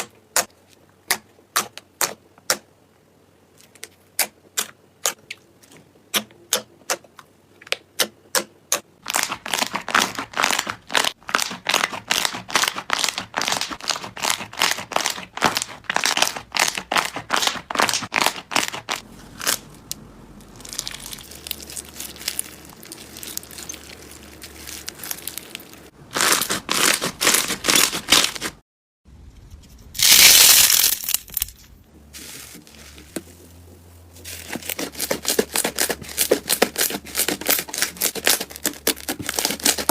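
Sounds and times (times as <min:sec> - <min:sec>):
slime crinkling and crunching: 0:09.0 - 0:19.7, 0:20.5 - 0:28.6, 0:30.0 - 0:31.6, 0:34.2 - 0:39.9.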